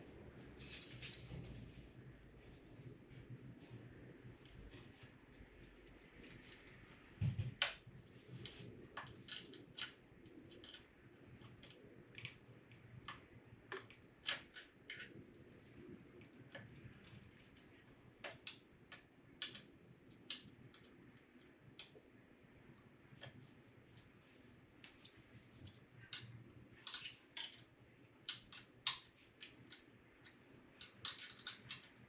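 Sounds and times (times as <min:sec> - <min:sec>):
clicks and taps on metal parts: 0:25.6 - 0:32.0.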